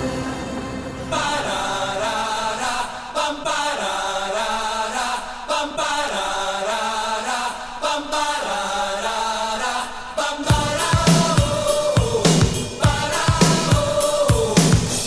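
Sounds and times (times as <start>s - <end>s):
music: 0.0s - 3.6s, 10.5s - 15.0s
chanted or sung vocals: 0.0s - 15.0s.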